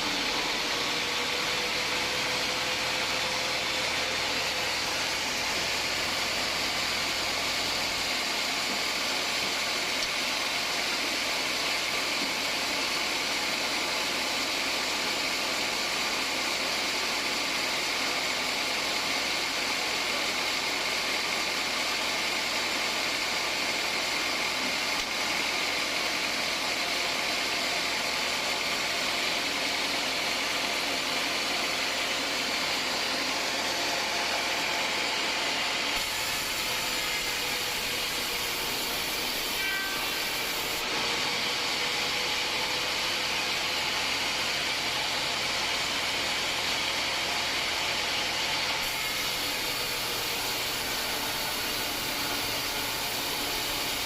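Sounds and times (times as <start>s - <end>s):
band saw cutting wood: 0.0s - 19.4s, 20.9s - 54.0s
machine motor: 35.9s - 41.2s.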